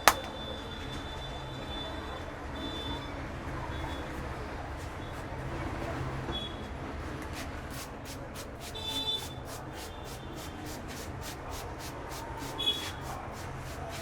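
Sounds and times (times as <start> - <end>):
hands tapping on head: 0.0 - 0.3.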